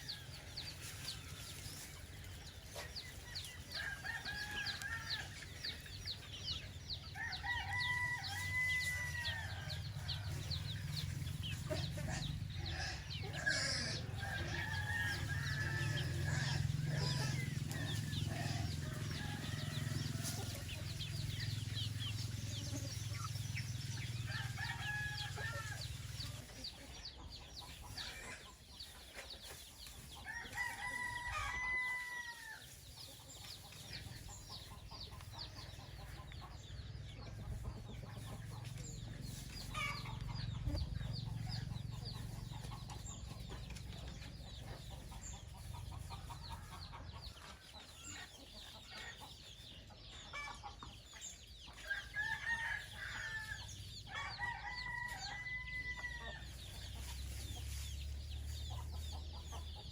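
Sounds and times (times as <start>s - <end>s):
chickens clucking: 0.0s - 59.9s
rooster crowing: 3.7s - 5.3s, 7.1s - 10.7s, 13.3s - 20.7s, 24.2s - 26.1s, 30.3s - 32.6s, 51.9s - 56.5s.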